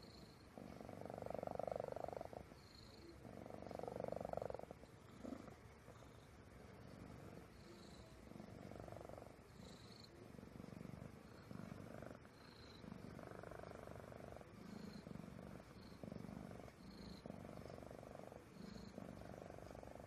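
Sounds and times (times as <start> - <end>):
cat purring: 0.0 - 20.0.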